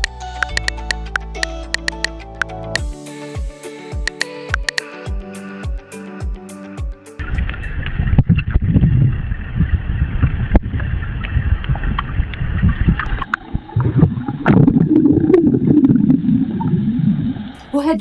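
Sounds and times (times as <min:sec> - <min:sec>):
scattered clicks: 0:00.0 - 0:02.5, 0:04.0 - 0:04.9
churning low rumble: 0:07.2 - 0:18.0.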